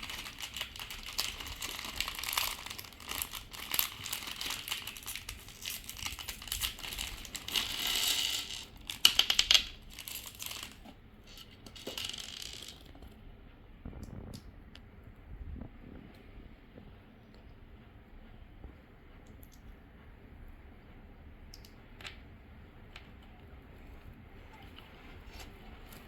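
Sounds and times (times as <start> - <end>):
plastic packaging crinkling: 0.0 - 12.9.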